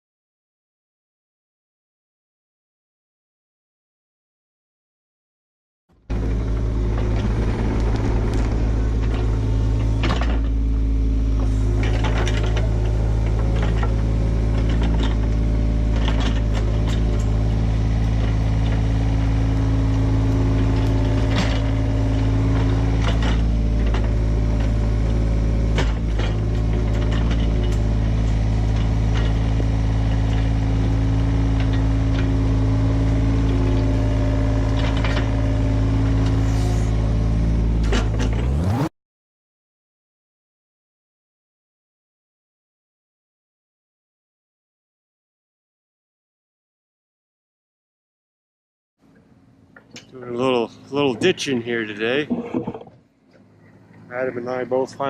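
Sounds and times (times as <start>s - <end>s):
excavator diesel engine: 5.9s - 38.9s
digging clanks and knocks: 9.0s - 10.7s, 11.3s - 17.4s, 20.5s - 24.8s, 25.7s - 30.5s, 52.1s - 53.0s.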